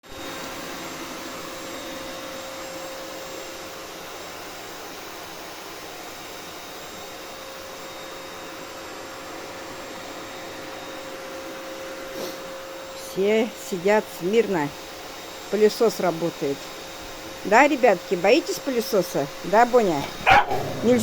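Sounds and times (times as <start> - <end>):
vacuum cleaner running: 0.0 - 21.0.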